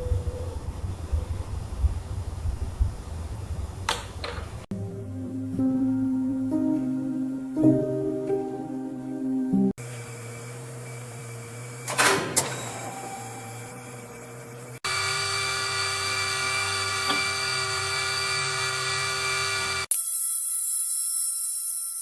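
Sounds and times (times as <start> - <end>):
small motorized machines whining: 9.8 - 22.0.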